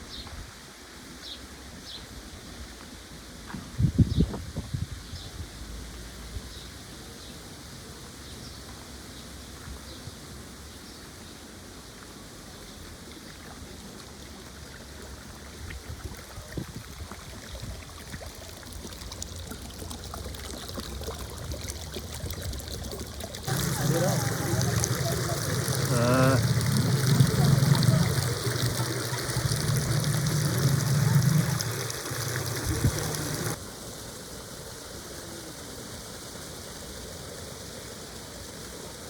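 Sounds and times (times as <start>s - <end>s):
stream water running: 5.1s - 39.0s.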